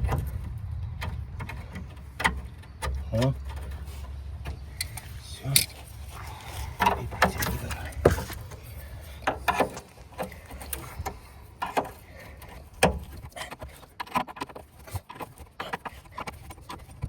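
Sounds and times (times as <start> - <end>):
wrench clicking on bolts: 4.4 - 6.0.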